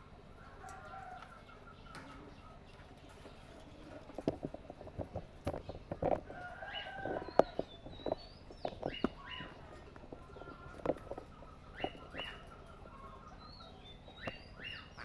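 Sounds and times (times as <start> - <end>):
parrots chirping and whistling: 11.7 - 12.5, 13.5 - 15.0.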